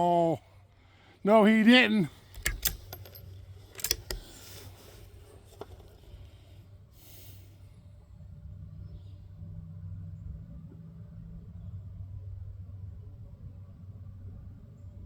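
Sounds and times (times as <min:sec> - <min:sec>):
faint low hum: 0:00.0 - 0:15.0
metallic clicks and rattles: 0:02.2 - 0:04.7.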